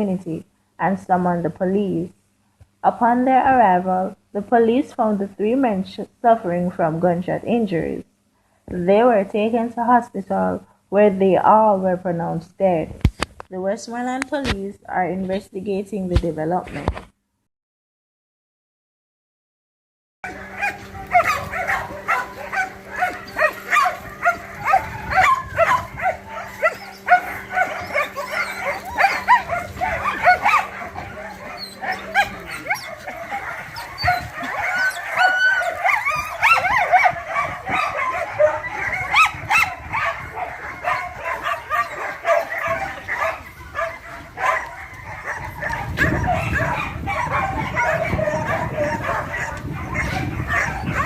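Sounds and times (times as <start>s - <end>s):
dogs barking and whining: 20.2s - 51.0s
steady low hum: 20.3s - 51.0s.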